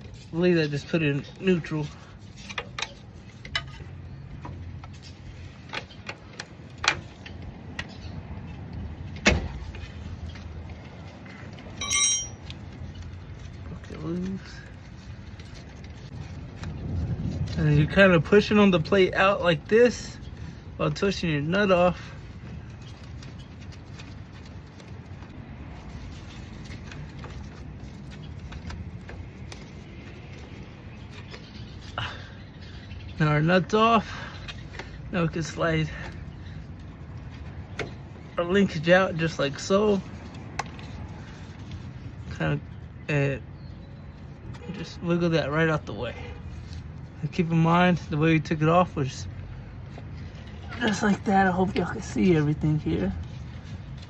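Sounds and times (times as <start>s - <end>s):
wrench clinking on metal: 11.8s - 12.6s.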